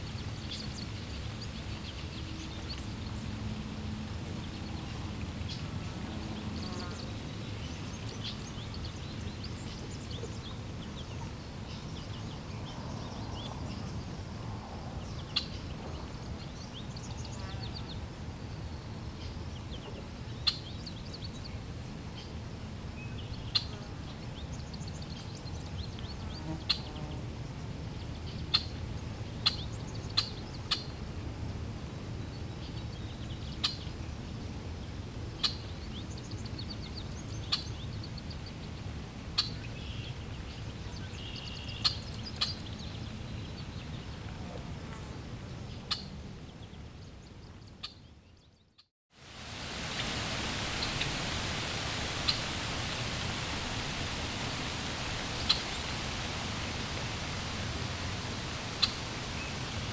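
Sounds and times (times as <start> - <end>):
flowing water rush: 0.0 - 12.5, 49.2 - 59.9
birds chirping: 49.8 - 59.9.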